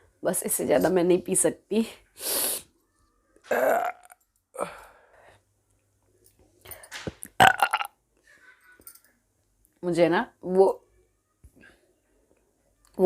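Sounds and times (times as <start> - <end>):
woman burping: 3.5 - 4.8, 7.4 - 8.0.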